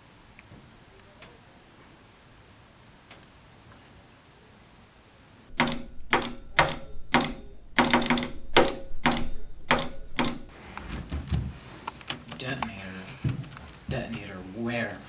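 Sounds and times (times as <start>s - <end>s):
morse code taps on hard surface: 5.5s - 10.6s.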